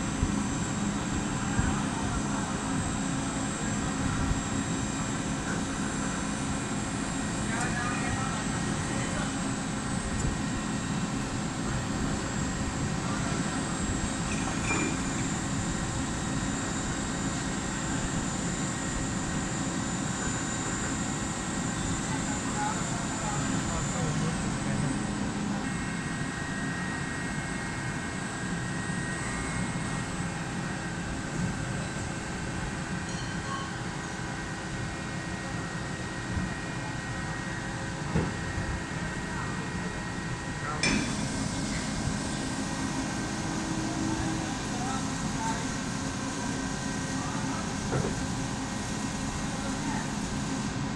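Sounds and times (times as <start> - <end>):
lathe machine drone: 40.0 - 50.9.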